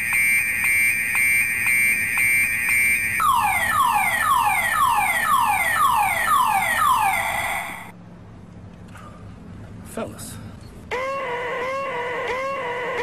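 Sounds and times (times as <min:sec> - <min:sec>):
car alarm siren: 0:00.0 - 0:07.9, 0:10.9 - 0:13.0.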